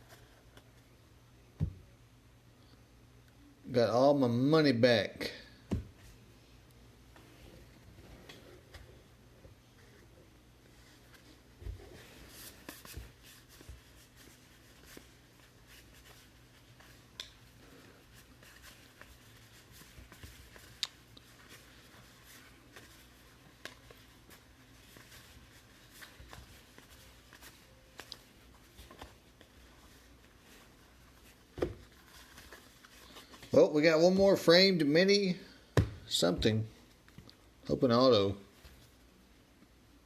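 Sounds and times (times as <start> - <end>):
low room hum: 0.0 - 40.0
trading cards handling rustles: 10.7 - 34.5.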